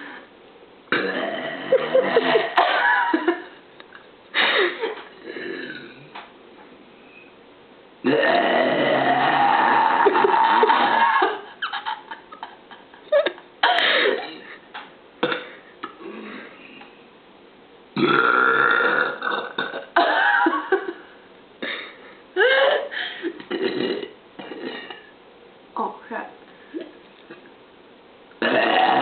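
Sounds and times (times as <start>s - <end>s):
woman burping: 0.9s - 3.2s, 5.2s - 6.1s, 8.0s - 11.7s, 13.6s - 14.5s, 15.2s - 16.5s, 18.0s - 20.7s, 23.4s - 25.1s, 28.4s - 29.0s.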